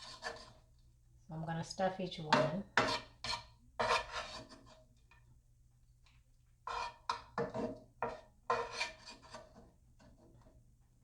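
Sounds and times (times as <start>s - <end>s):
utensil scraping skillet: 0.0s - 0.7s, 2.3s - 4.9s, 6.6s - 10.5s.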